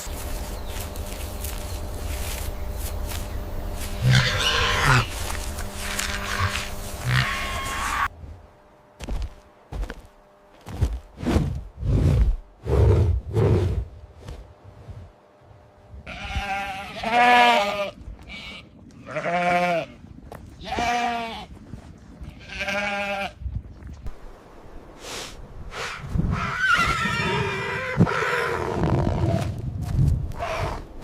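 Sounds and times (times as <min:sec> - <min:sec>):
farm animal bleating: 0:04.0 - 0:08.1, 0:16.0 - 0:21.6, 0:22.2 - 0:23.4.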